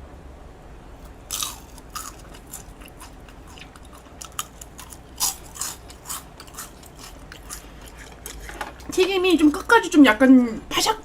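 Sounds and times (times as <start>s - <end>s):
crunchy food chewing: 1.0s - 9.7s.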